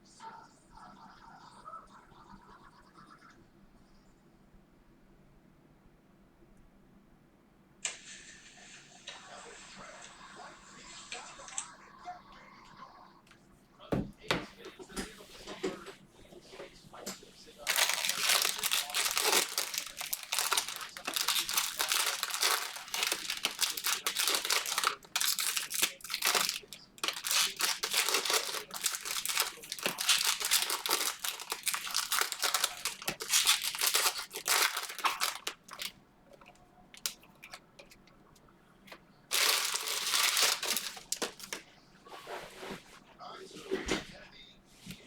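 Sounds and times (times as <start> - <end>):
plastic wrapping crinkling and tearing: 17.6 - 38.0, 39.3 - 41.6.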